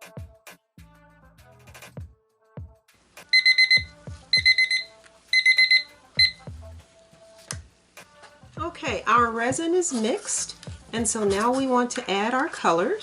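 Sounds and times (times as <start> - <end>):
background music: 0.0 - 13.0
digital timer beeping: 3.4 - 6.4.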